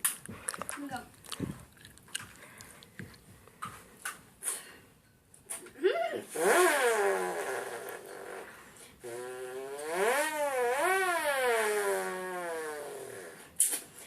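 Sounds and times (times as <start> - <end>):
person imitating engine revving: 5.8 - 13.4.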